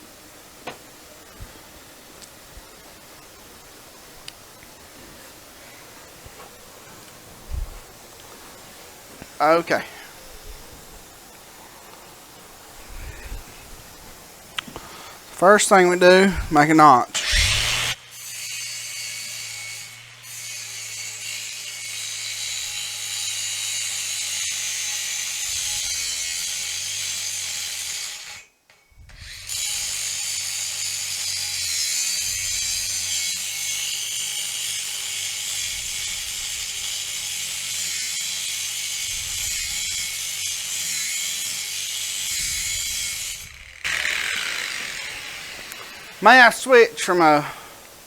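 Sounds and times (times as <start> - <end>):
cutting tool cutting metal pipe: 17.1 - 28.5, 29.2 - 46.2.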